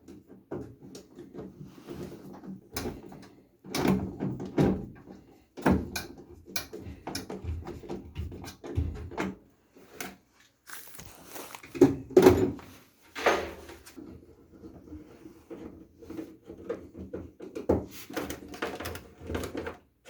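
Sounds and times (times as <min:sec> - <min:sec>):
furnace panels knocking and rattling: 0:00.0 - 0:09.4.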